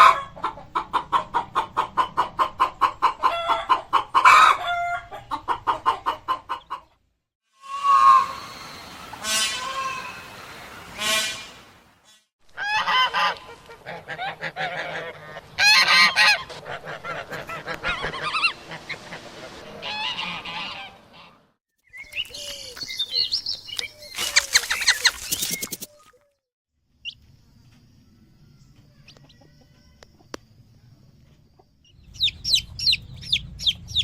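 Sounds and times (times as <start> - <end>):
fowl calling: 12.6 - 21.5.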